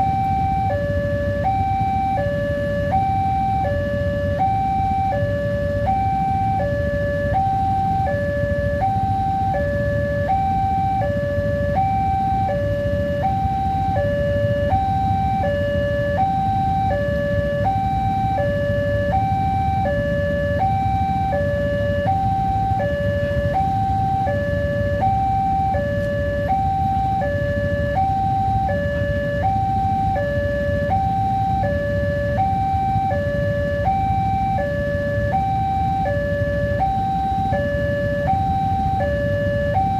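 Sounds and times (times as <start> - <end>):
two-tone crossing alarm: 0.0 - 39.9.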